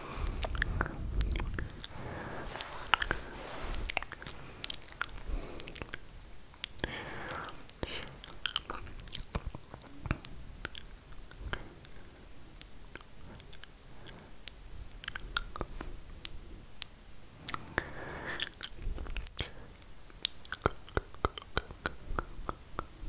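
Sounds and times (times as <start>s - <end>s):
soft breathing: 0.0s - 9.0s, 13.1s - 14.5s, 17.3s - 20.0s
wet mouth clicks and smacks: 0.2s - 1.9s, 7.7s - 10.9s, 18.4s - 19.5s, 20.2s - 22.9s.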